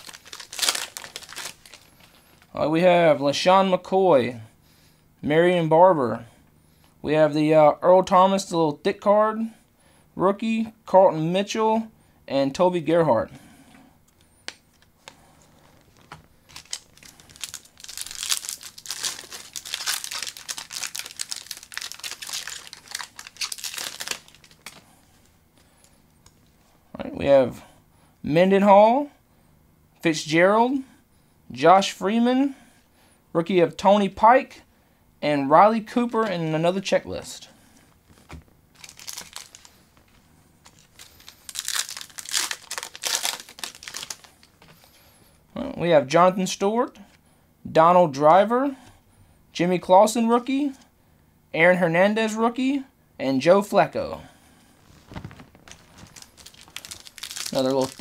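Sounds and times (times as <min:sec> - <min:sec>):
foil wrapper crinkling and tearing: 0:00.0 - 0:02.5, 0:15.8 - 0:24.8, 0:38.1 - 0:44.7, 0:54.9 - 0:58.0.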